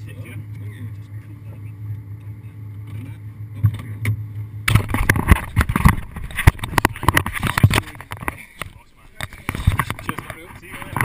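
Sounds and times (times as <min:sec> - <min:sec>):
car engine idling: 0:00.0 - 0:11.0
knocks and rustling near microphone: 0:02.8 - 0:11.0.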